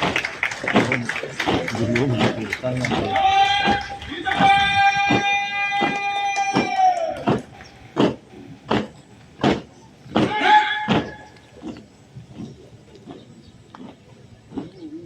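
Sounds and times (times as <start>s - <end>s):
sharp knocks or stamps: 0.0s - 11.1s
person shouting: 3.0s - 7.3s, 10.3s - 11.0s.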